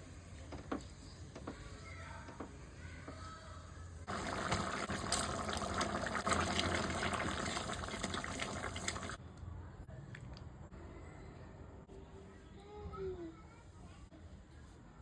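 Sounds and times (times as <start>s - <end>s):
water running: 4.1s - 9.2s.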